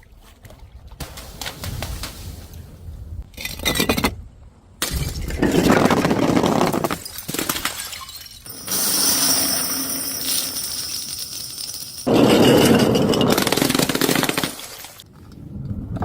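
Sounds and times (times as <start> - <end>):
glass shards clinking: 7.0 - 13.7
glass shattering: 7.0 - 15.0.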